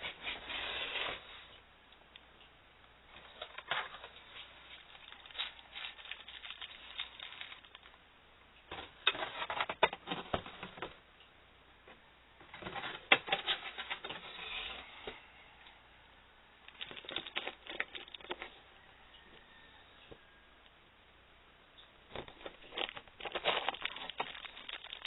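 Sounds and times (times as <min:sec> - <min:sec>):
rustles: 0:00.0 - 0:02.2, 0:03.1 - 0:08.0, 0:16.6 - 0:20.3, 0:22.1 - 0:25.0.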